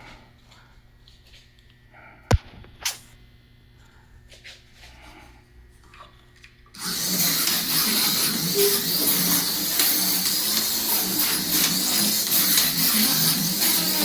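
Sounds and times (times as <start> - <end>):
slot car running on track: 6.8 - 14.0.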